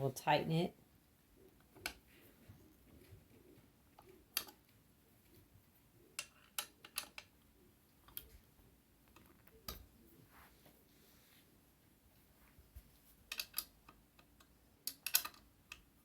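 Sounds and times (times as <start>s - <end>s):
allen wrench metal clicks: 14.8s - 15.8s.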